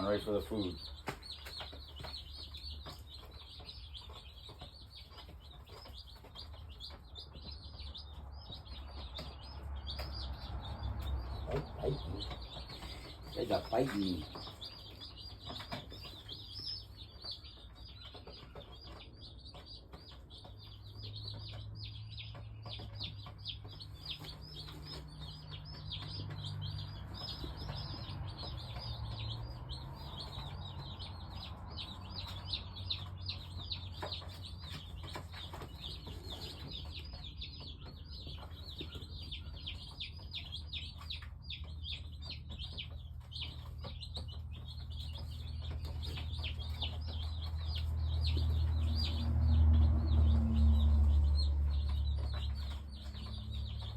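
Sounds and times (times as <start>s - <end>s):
chicks peeping: 0.0s - 53.9s.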